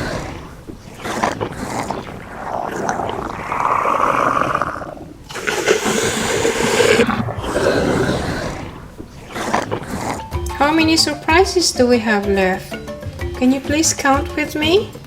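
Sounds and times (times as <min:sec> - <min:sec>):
dinosaur roars: 0:00.0 - 0:11.0.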